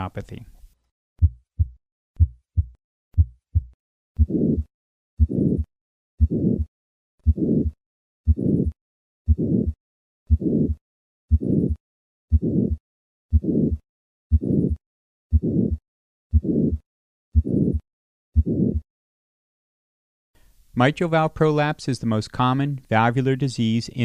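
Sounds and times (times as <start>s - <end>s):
harsh heart murmur: 1.2s - 16.8s, 17.4s - 17.8s, 18.4s - 18.8s
heartbeat: 1.2s - 17.8s, 18.4s - 18.9s.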